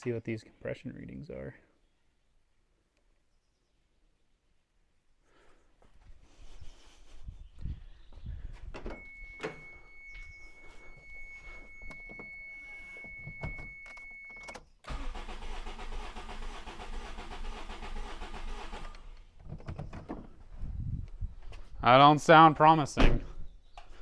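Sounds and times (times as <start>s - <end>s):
steady high tone: 8.9s - 14.4s
starter motor cranking engine: 14.9s - 19.3s.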